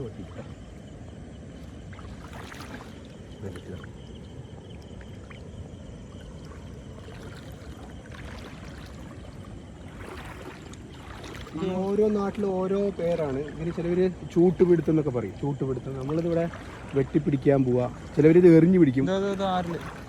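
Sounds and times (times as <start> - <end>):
person wading through river water: 0.0 - 20.0.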